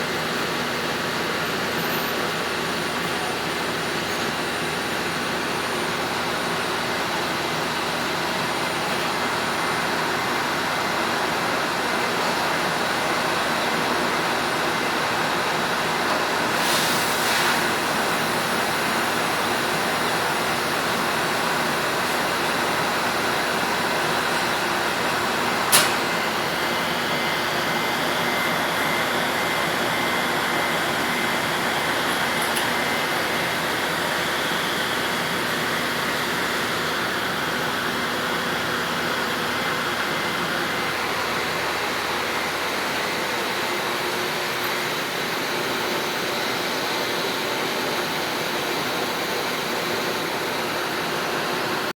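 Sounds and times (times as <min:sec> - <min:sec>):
sharp click: 0:25.7 - 0:26.2.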